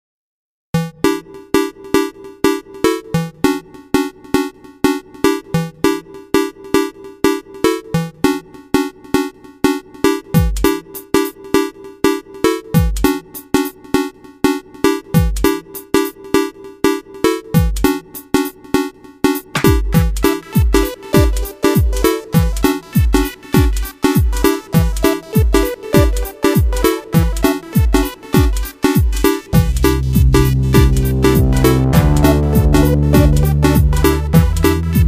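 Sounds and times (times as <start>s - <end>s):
staccato synth notes: 19.5s - 22.6s, 25.6s - 35.0s
deep falling bass hits: 29.6s - 34.6s.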